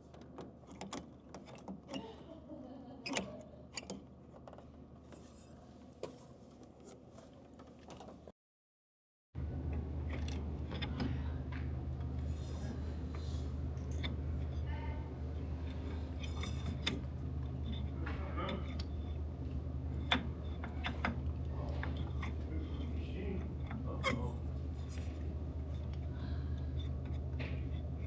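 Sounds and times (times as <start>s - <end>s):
steady low hum: 9.4s - 28.0s
clicks and scrapes of handled parts: 15.6s - 18.9s, 20.0s - 26.1s.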